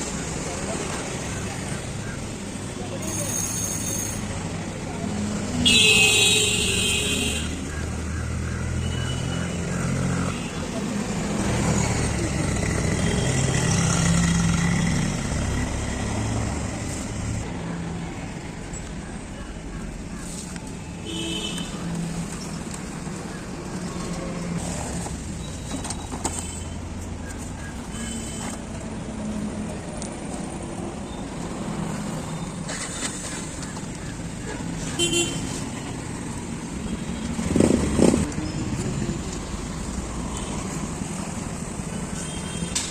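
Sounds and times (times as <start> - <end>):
road traffic: 0.0 - 42.9.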